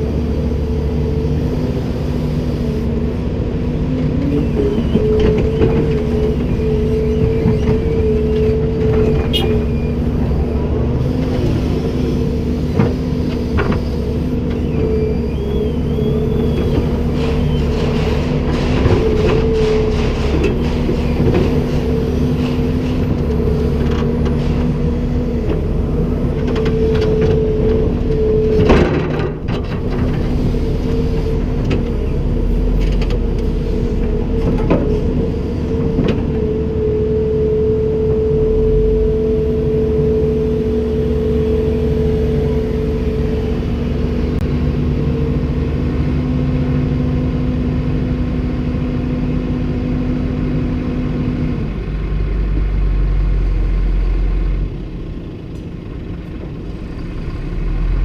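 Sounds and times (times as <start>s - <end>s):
excavator diesel engine running: 0.0s - 58.0s
metallic knocks and clanks: 16.6s - 24.8s.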